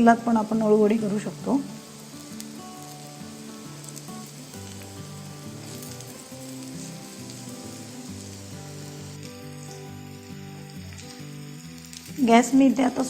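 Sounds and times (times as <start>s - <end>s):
food sizzling in oil: 0.0s - 13.0s
soft background music: 0.0s - 13.0s.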